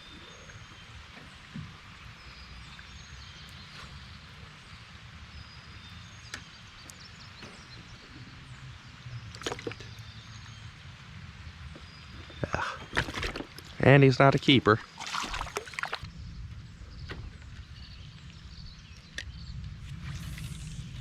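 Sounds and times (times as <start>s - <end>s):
steady low rumble: 15.9s - 21.0s.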